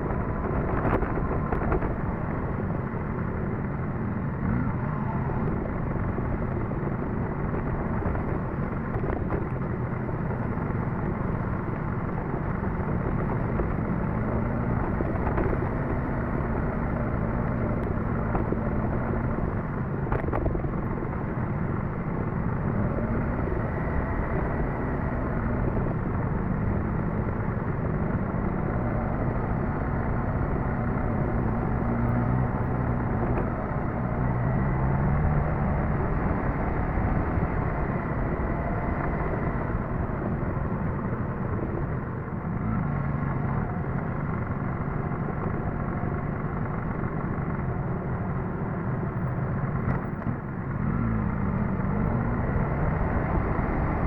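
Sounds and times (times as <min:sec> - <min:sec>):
road noise: 0:00.0 - 0:54.0.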